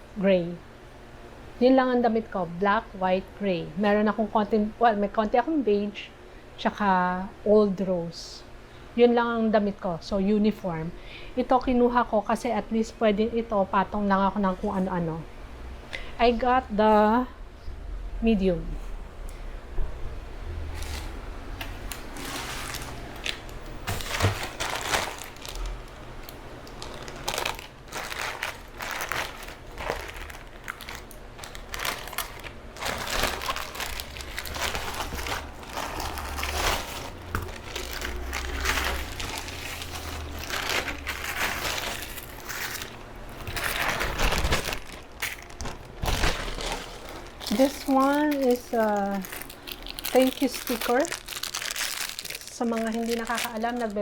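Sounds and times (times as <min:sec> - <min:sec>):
plastic packaging crinkling: 0:20.7 - 0:54.0.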